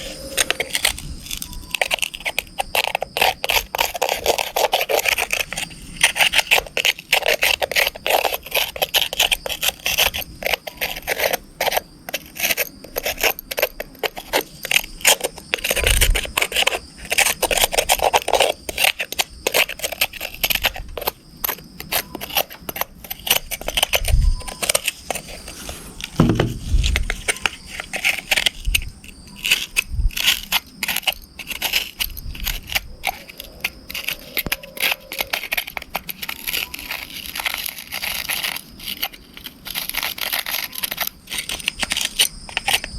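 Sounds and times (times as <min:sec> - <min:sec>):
mud being scraped and scrubbed: 0:00.0 - 0:42.9
dull knocks: 0:26.2 - 0:26.9.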